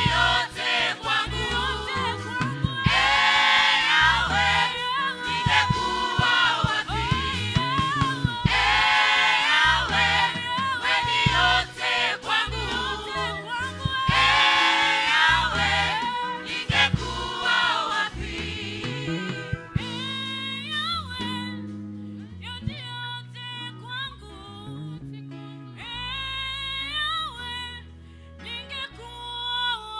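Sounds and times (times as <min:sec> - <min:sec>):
choir singing gospel: 0:00.0 - 0:21.1
band with bass line: 0:00.0 - 0:28.2.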